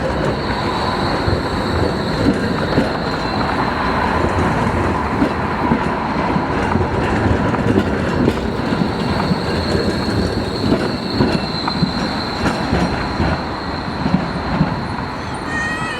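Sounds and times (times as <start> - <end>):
tram wheels rumbling over rails: 0.0 - 15.9
high-pitched wheel squeal: 8.6 - 15.9.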